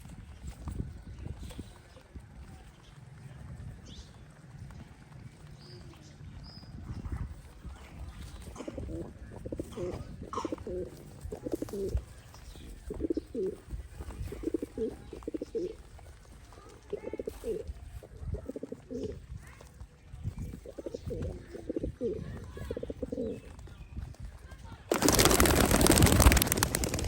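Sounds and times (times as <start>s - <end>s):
pigeons cooing: 8.4s - 12.1s, 12.8s - 13.6s, 14.2s - 15.8s, 18.4s - 19.2s, 20.6s - 23.5s, 24.9s - 27.0s.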